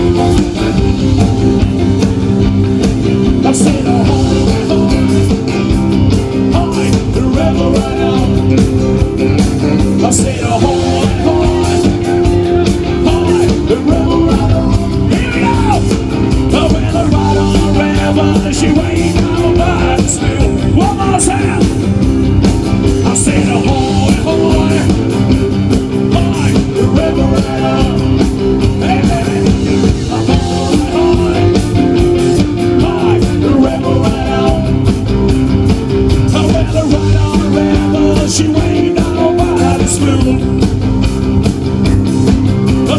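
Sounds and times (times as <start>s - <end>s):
rock band playing live: 0.0s - 42.9s.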